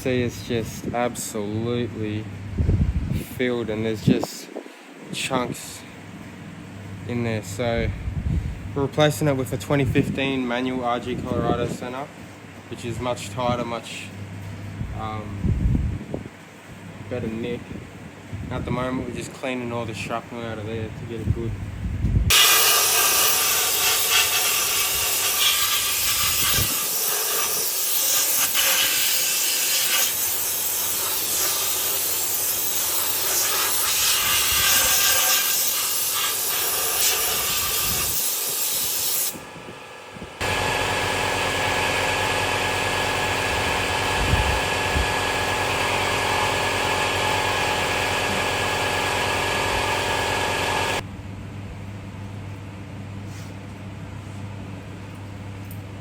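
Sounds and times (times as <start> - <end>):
steady hum: 0.0 - 53.1
pressurised spray hissing: 22.3 - 39.4.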